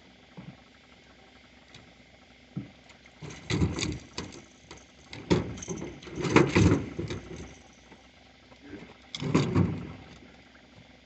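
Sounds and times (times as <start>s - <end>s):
gear knocking in a boat: 2.5s - 8.1s, 8.8s - 10.3s.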